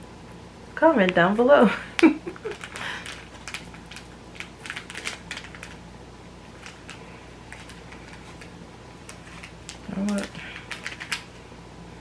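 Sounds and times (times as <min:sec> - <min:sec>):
plastic sachet crinkling: 0:02.4 - 0:05.8, 0:06.4 - 0:11.3.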